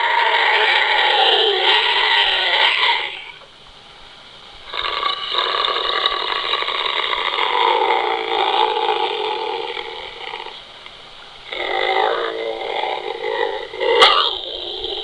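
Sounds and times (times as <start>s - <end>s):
rough dinosaur call: 0.0s - 3.4s, 4.7s - 10.6s, 11.4s - 15.0s.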